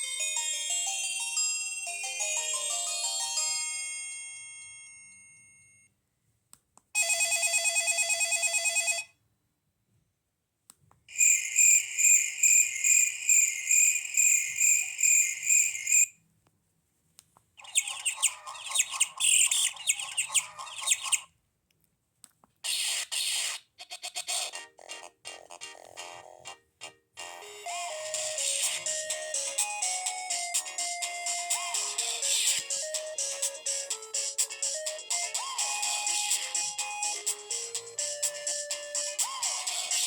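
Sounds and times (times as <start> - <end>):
chirping ringtone pattern: 0.0 - 3.8, 11.2 - 16.1, 17.6 - 21.3, 24.4 - 40.0
ringtone melody: 0.0 - 5.9, 17.6 - 21.2, 24.4 - 40.0.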